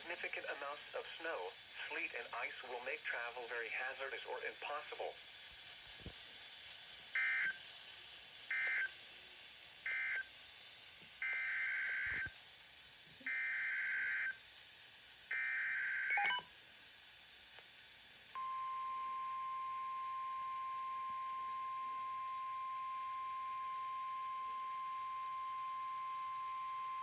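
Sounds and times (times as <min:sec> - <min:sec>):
steady single-pitch alert tone: 0:16.1 - 0:16.4.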